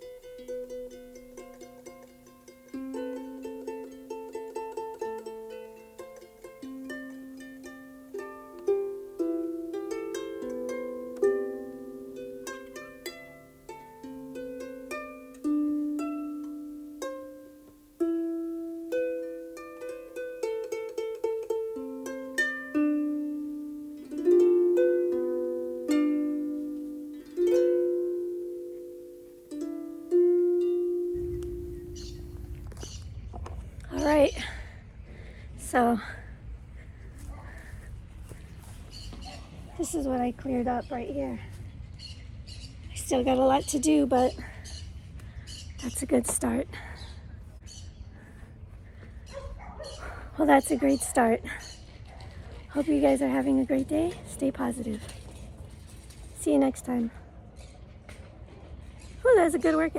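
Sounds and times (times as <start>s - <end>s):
harp playing slow melody: 0.0s - 34.5s
low rumbling noise: 30.6s - 50.4s.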